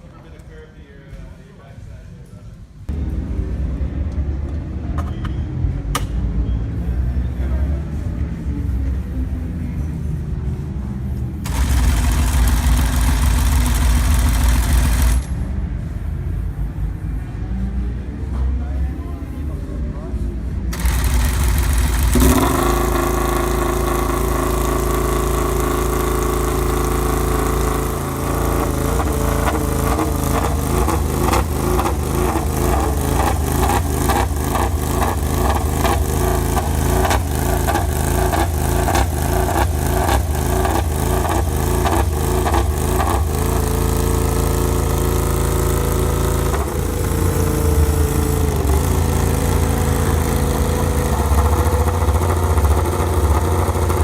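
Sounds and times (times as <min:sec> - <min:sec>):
motorcycle engine idling: 0:11.4 - 0:15.4, 0:20.7 - 0:54.0.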